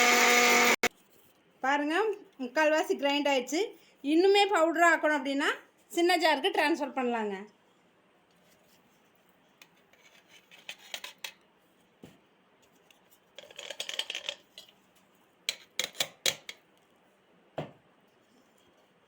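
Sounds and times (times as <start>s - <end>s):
spoon scraping a grinder jar: 9.8s - 11.3s.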